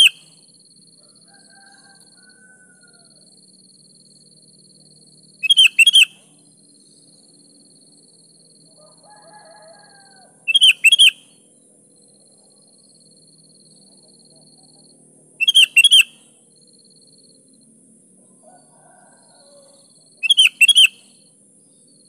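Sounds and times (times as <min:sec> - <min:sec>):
bird calling in quick high notes: 0:05.4 - 0:06.1, 0:10.5 - 0:11.2, 0:15.4 - 0:16.1, 0:20.2 - 0:21.0.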